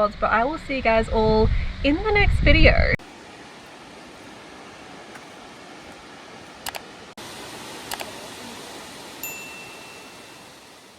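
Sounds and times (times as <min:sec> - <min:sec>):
water rushing: 0:03.0 - 0:10.9
sharp double clicks: 0:06.6 - 0:06.9.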